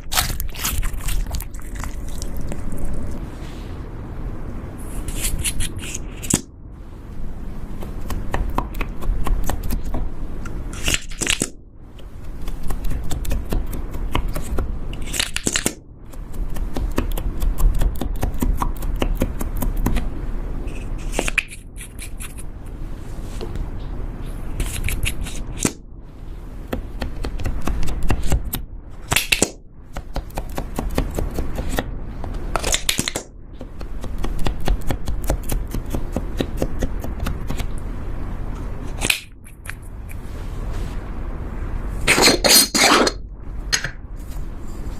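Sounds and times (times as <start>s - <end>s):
slime crackling and popping: 0.0s - 3.0s
slime squelch: 0.0s - 3.7s.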